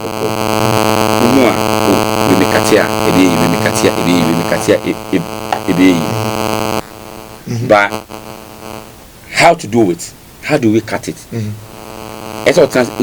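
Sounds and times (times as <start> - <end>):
faint voice talking: 0.0 - 6.4, 7.4 - 8.0
electrical hum and buzz: 0.0 - 13.0.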